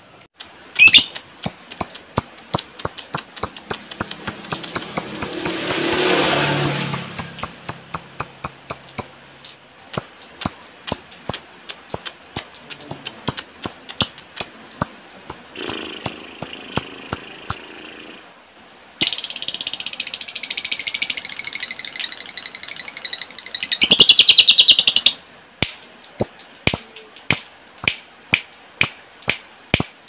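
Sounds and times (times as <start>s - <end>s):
lovebird tick calls: 0.4s - 6.0s, 6.6s - 17.6s
lovebird fast chatter: 0.8s - 9.1s, 9.9s - 18.3s.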